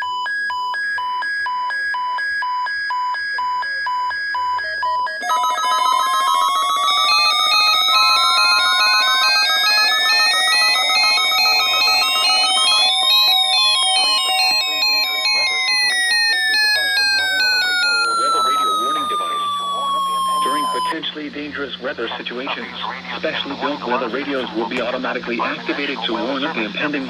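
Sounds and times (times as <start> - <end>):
two-pitch alternating beeping: 5.2 - 20.9.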